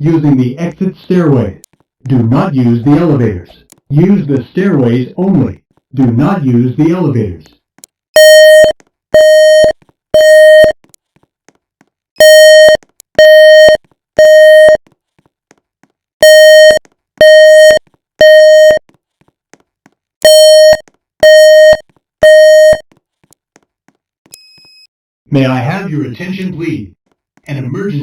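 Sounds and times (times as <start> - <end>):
fire alarm beeping: 8.2 - 10.8, 12.2 - 14.8, 16.2 - 18.8, 20.2 - 22.8.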